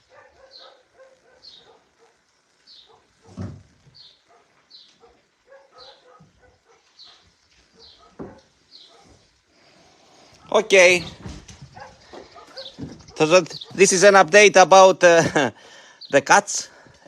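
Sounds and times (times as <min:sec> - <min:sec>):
distant dogs barking: 0:00.0 - 0:09.5, 0:10.3 - 0:14.2
small bird chirping: 0:00.3 - 0:03.2, 0:03.8 - 0:06.1, 0:06.9 - 0:09.1, 0:12.3 - 0:13.9.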